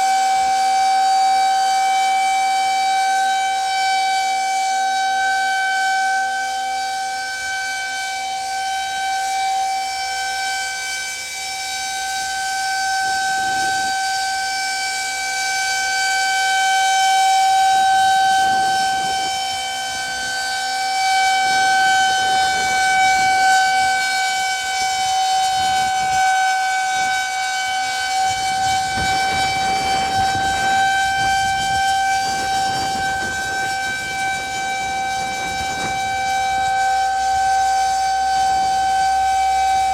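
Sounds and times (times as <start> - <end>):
outdoor warning siren steady tone: 0.0 - 39.9
low rumble: 27.6 - 37.7.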